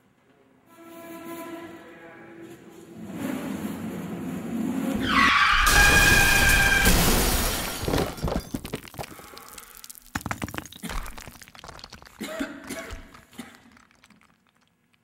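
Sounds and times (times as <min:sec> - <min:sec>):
brake screech: 0:05.0 - 0:06.9
vehicle smashing through wall: 0:05.0 - 0:08.6
debris and glass clattering: 0:05.6 - 0:14.7.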